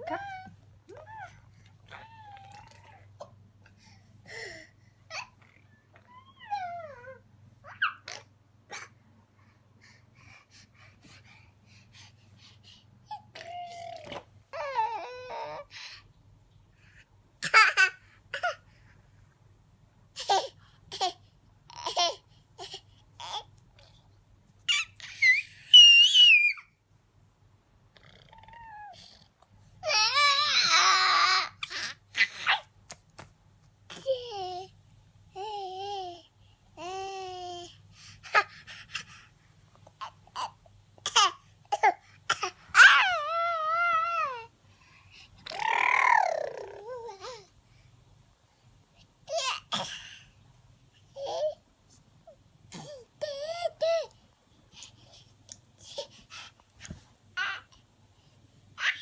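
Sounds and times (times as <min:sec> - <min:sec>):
baby squealing and giggling: 0:05.1 - 0:08.9, 0:24.7 - 0:26.6, 0:45.5 - 0:47.3, 0:58.8 - 0:59.0.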